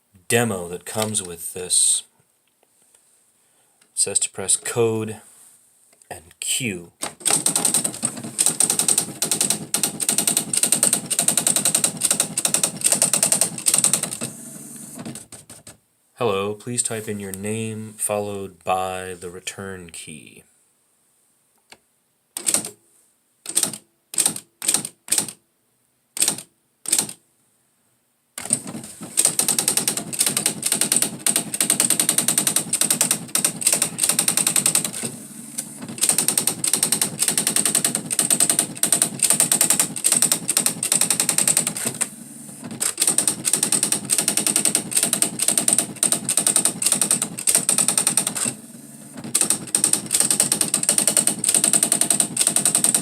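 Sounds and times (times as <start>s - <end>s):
electronic typewriter printing: 7.0s - 15.7s, 22.4s - 22.7s, 23.5s - 25.3s, 28.4s - 53.0s.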